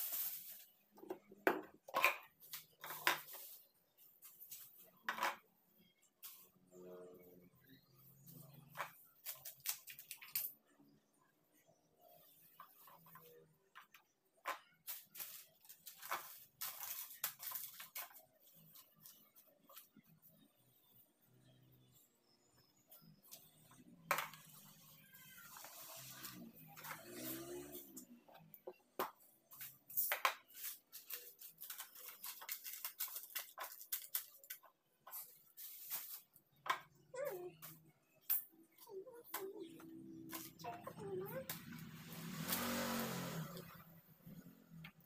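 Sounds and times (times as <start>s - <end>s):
grocery packaging rustling: 14.9s - 18.6s, 30.5s - 34.6s.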